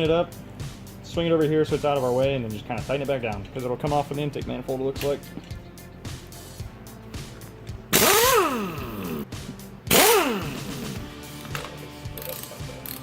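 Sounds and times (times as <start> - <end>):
background music: 0.0 - 13.0
cordless power tool spinning: 7.9 - 9.3, 9.9 - 11.0.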